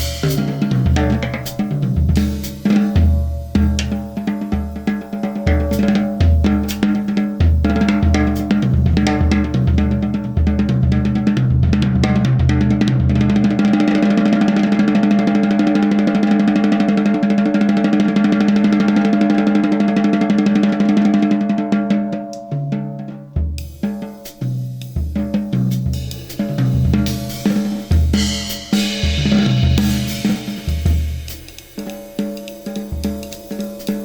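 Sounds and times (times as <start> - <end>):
bass drum beats: 0.0 - 16.5, 23.4 - 34.0
snare drum roll: 0.0 - 34.0.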